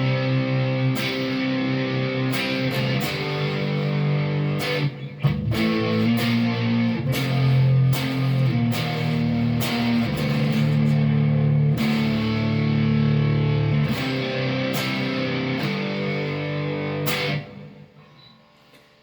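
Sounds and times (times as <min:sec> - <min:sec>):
electric guitar chords strummed: 0:00.0 - 0:18.0.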